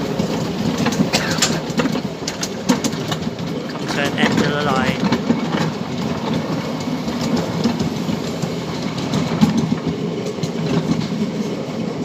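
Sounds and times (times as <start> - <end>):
train wheels rumbling on rail: 0.0 - 12.0.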